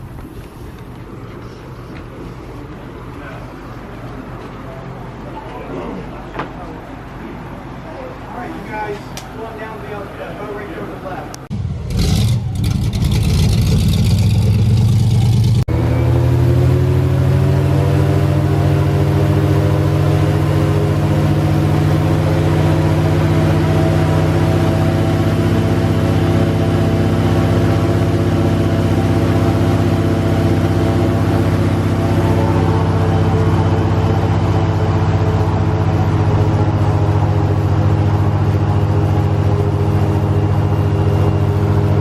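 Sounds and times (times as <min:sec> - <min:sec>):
airboat engine and propeller: 0:12.8 - 0:42.0.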